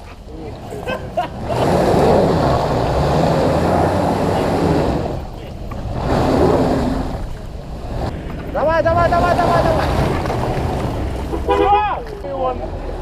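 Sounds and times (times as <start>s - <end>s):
wheels spinning through mud: 0.0s - 11.4s
engine revving hard: 1.3s - 7.2s.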